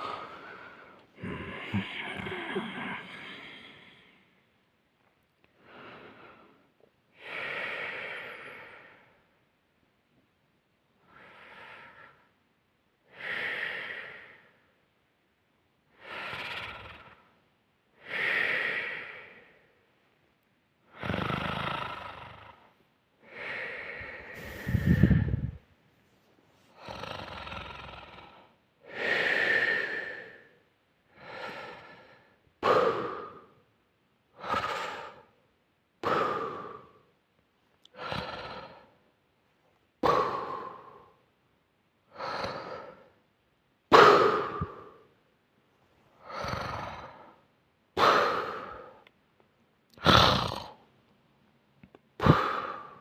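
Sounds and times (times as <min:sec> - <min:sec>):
deep snort: 0:00.0 - 0:04.2, 0:16.0 - 0:17.3, 0:20.9 - 0:22.7, 0:23.5 - 0:25.6, 0:26.7 - 0:30.5, 0:31.2 - 0:33.6, 0:34.4 - 0:35.3, 0:36.0 - 0:37.1, 0:37.9 - 0:39.0, 0:40.0 - 0:41.2, 0:43.9 - 0:45.1, 0:46.2 - 0:49.0, 0:50.0 - 0:50.8, 0:52.2 - 0:53.0
person snoring: 0:00.0 - 0:04.2, 0:16.0 - 0:17.3, 0:20.9 - 0:22.7, 0:23.3 - 0:25.6, 0:26.7 - 0:30.5, 0:37.9 - 0:39.0, 0:46.2 - 0:47.4, 0:50.0 - 0:50.8.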